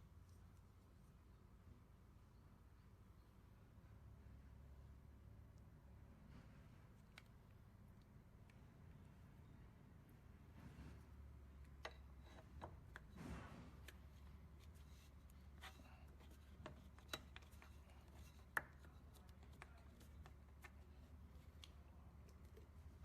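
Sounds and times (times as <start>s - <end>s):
soft scrape: 10.5s - 11.3s, 13.1s - 16.5s.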